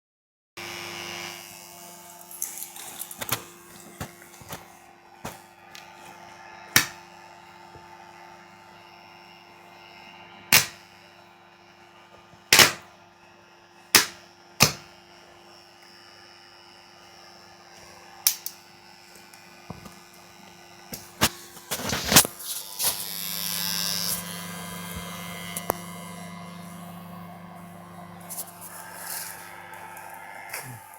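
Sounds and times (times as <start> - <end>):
arc welder hum: 0.6 - 30.9
welding arc cracking: 1.0 - 5.9, 6.8 - 7.1, 10.5 - 11.0, 12.5 - 12.9, 14.0 - 15.0, 17.8 - 30.9.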